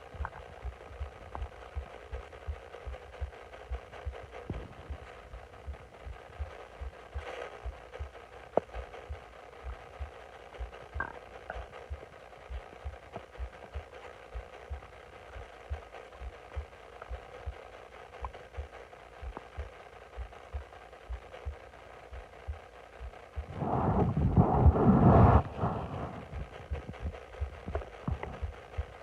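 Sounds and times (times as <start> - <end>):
stomach growling and gurgling: 0.0 - 2.2, 3.7 - 9.1, 10.6 - 14.5, 23.4 - 29.0
soft low thumps: 0.0 - 17.6, 18.2 - 29.0.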